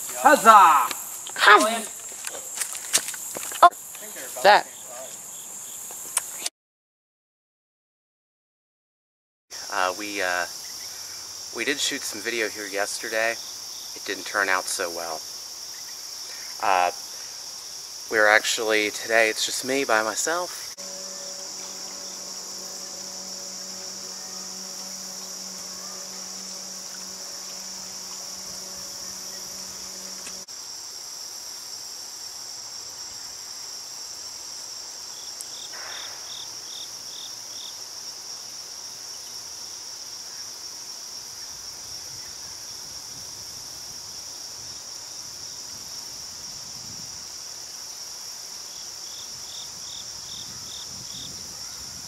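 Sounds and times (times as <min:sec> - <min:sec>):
insects chirping: 0:00.0 - 0:06.5, 0:09.5 - 0:52.0
low hum: 0:20.8 - 0:30.5.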